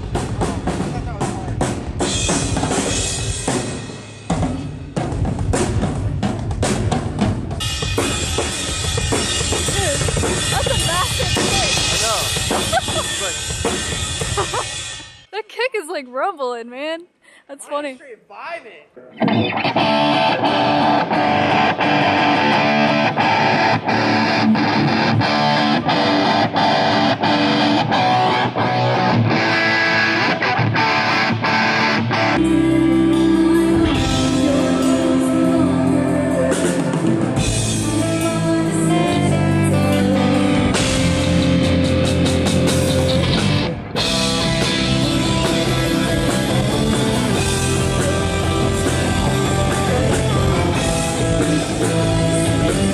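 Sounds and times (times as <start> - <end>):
bass: 0.0 - 15.3, 19.1 - 52.9
drum kit beat: 0.0 - 16.0, 19.7 - 30.3, 32.4 - 52.9
electric guitar: 19.1 - 52.9.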